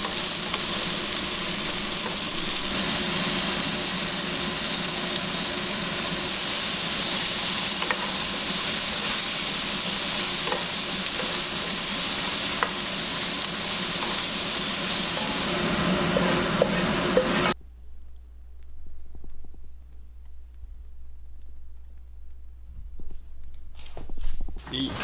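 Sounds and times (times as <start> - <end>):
crayfish sizzling in a hot pan: 0.0 - 16.0.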